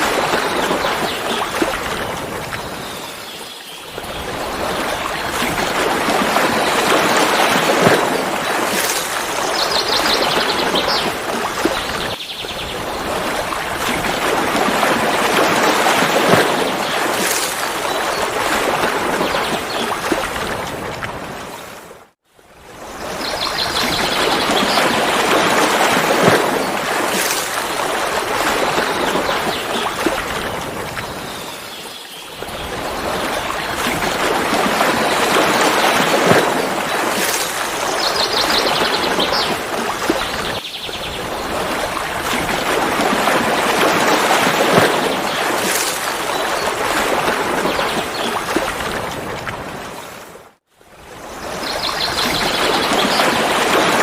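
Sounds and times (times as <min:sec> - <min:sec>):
waterfall rushing and splashing: 0:00.0 - 0:03.3.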